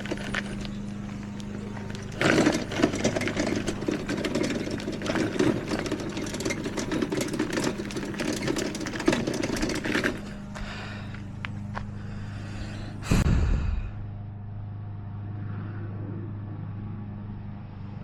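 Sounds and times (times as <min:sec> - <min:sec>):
remote-control mower clattering: 0:00.0 - 0:11.8
low hum: 0:00.0 - 0:18.0.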